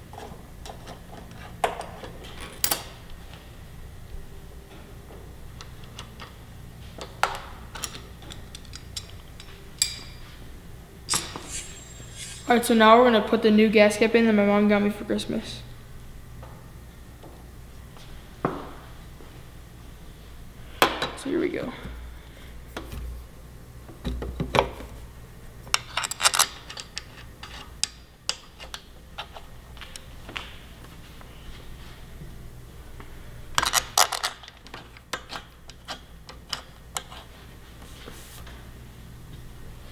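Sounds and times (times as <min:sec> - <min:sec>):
low steady hum: 0:09.5 - 0:16.3
hand tools clicking on metal parts: 0:11.1 - 0:12.5.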